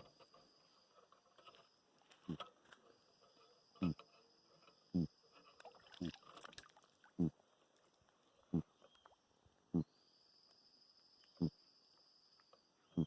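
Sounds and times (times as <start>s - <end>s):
catfish grunting: 3.8s - 4.1s.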